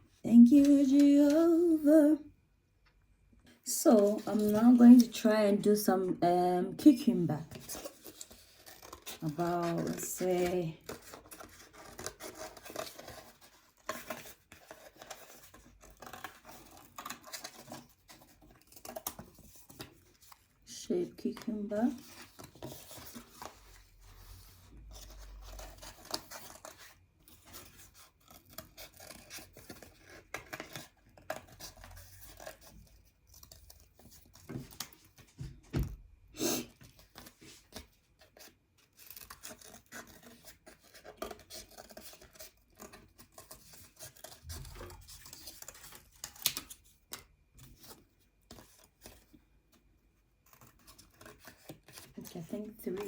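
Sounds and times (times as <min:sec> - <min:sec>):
paper rustling and scraping: 0:07.4 - 0:35.6, 0:36.6 - 0:49.4.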